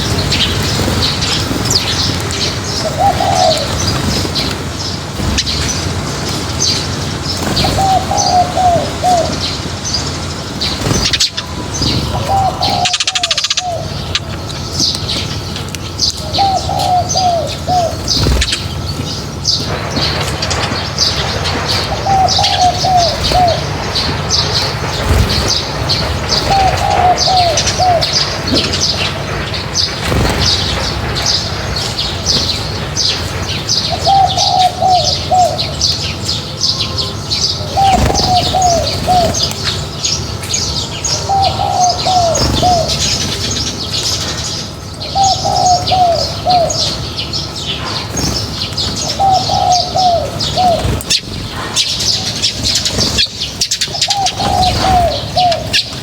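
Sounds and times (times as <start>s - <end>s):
falling bird call: 0.0s - 14.8s, 16.2s - 32.7s, 36.7s - 43.5s, 45.1s - 56.0s
wing flaps: 0.0s - 15.6s, 17.7s - 33.5s, 37.8s - 40.0s, 50.3s - 56.0s
small birds chirping: 0.0s - 56.0s.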